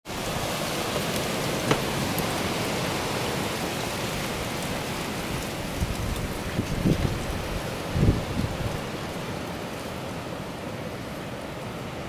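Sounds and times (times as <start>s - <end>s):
blizzard wind rushing: 0.1s - 12.0s.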